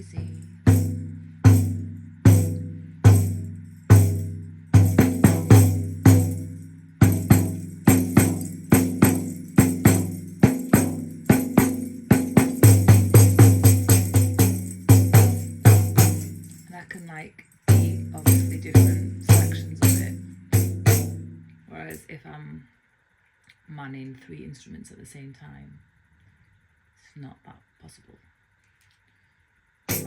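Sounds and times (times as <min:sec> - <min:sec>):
hand drum strikes with jingles: 0:00.0 - 0:16.8, 0:17.7 - 0:21.5.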